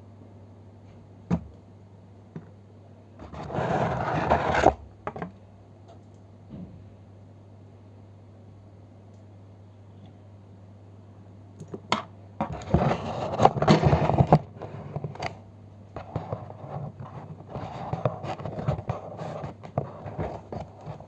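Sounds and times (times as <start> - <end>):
low steady hum: 0.0 - 21.0
packaging crinkling and scraping: 3.2 - 4.8, 12.5 - 15.4, 16.0 - 21.0.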